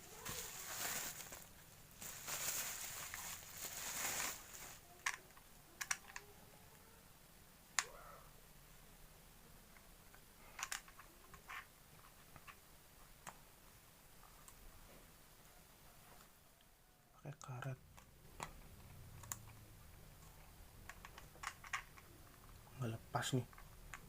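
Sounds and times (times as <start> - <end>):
packaging rustling: 0.0 - 5.2.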